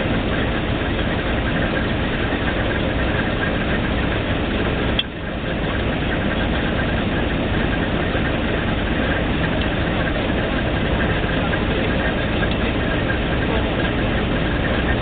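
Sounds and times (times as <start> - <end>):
drilling rig engine running: 0.0 - 15.0.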